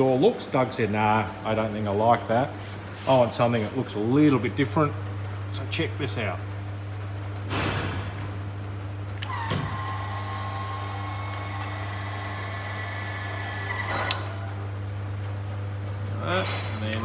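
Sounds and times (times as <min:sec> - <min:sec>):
mechanism clunk: 0:06.5 - 0:17.0
electric motor whining: 0:09.2 - 0:15.5.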